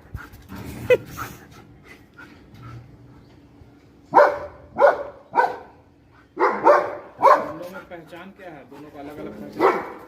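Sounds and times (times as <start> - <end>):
dog barking: 4.1 - 5.7, 6.4 - 7.6, 9.6 - 10.0.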